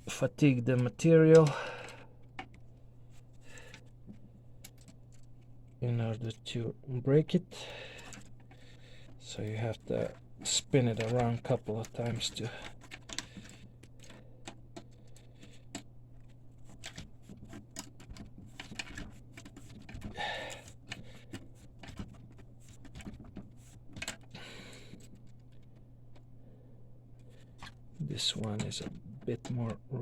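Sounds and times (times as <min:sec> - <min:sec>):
steady low hum: 0:00.0 - 0:30.0
small metal clicks and scrapes: 0:08.0 - 0:26.3.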